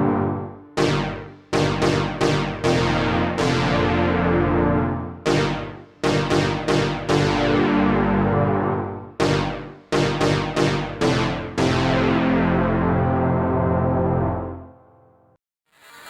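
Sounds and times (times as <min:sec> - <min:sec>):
synthesizer keys chords: 0:00.0 - 0:14.6.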